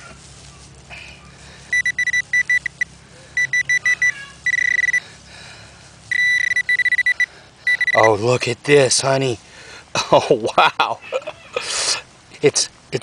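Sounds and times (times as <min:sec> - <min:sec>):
rapid high beeps: 0:01.7 - 0:05.0, 0:06.1 - 0:08.2
solid beeping tone: 0:01.7 - 0:05.0, 0:06.1 - 0:08.2.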